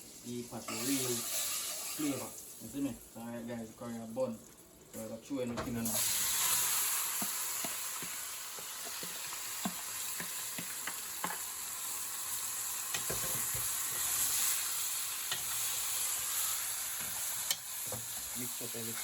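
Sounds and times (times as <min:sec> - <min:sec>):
chicken sizzling in hot oil: 0:00.0 - 0:19.0
spoon scraping and knocking pot: 0:07.1 - 0:11.4.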